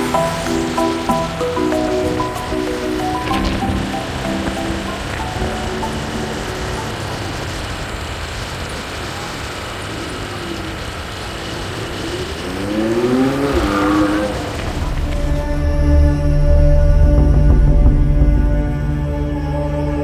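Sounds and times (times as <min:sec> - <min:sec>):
music tones: 0:00.0 - 0:07.9, 0:13.0 - 0:20.0
steady rushing background: 0:00.0 - 0:20.0
vehicle engine passing: 0:12.0 - 0:18.6.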